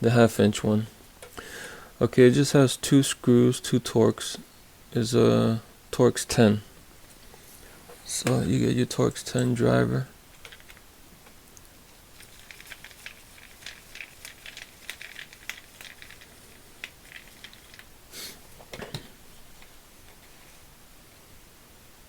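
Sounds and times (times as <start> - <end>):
handling noises: 10.2 - 11.4, 12.0 - 20.8.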